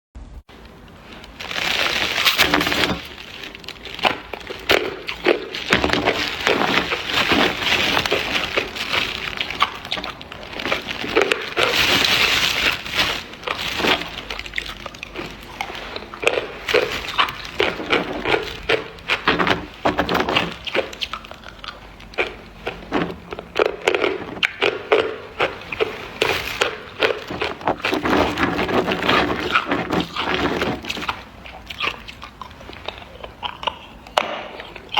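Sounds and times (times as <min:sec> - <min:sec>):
ice being chewed: 0:00.7 - 0:34.9.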